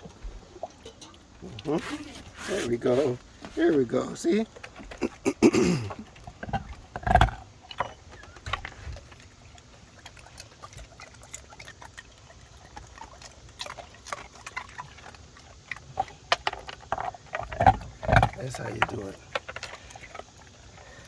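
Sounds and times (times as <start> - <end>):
water splashing in a bowl: 5.8 - 21.0.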